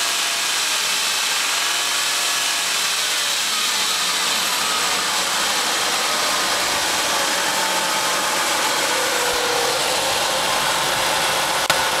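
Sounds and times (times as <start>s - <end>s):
car engine running with knock: 4.5s - 12.0s.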